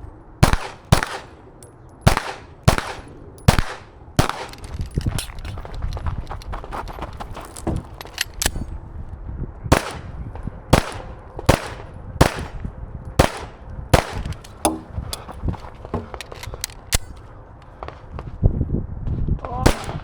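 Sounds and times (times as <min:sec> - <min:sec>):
pistol shots: 0:00.4 - 0:01.4, 0:02.0 - 0:04.7, 0:09.7 - 0:10.1, 0:10.7 - 0:12.6, 0:13.2 - 0:15.2, 0:19.7 - 0:20.0
fainter sharp cracks: 0:02.1 - 0:06.5, 0:13.2 - 0:17.2.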